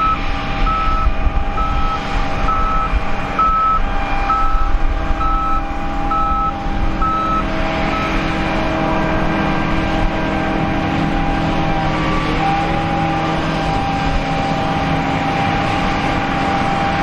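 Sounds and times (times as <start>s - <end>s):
vehicle backup alarm beeping: 0.0s - 8.2s
engine running: 0.0s - 17.0s.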